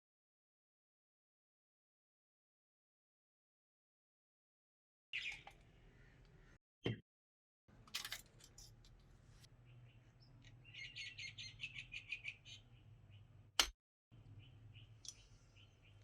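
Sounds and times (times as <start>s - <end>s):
small bird chirping: 5.2s - 6.6s, 9.5s - 13.3s, 14.2s - 16.0s.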